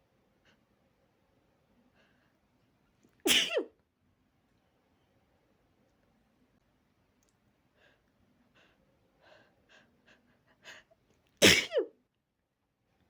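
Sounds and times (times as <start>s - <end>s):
person sneezing loudly: 3.3s - 3.7s, 11.4s - 11.9s.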